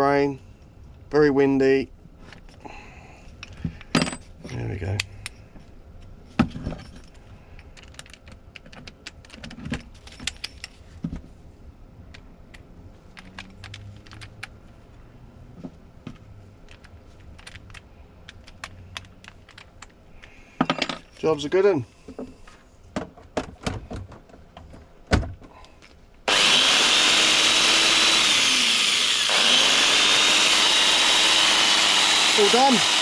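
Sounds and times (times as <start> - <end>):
small parts and tools clicking: 6.8 - 10.8, 12.1 - 14.6, 16.1 - 21.3.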